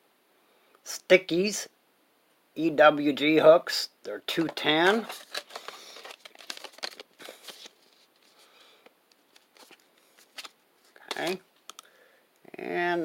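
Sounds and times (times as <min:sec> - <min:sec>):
plastic packaging crinkling: 0:04.3 - 0:11.8.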